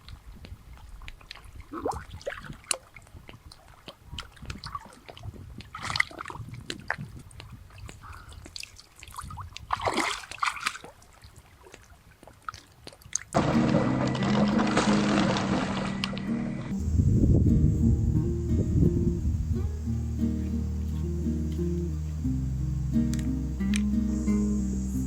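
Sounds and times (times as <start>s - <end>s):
water splashing and sloshing: 0.0s - 16.9s.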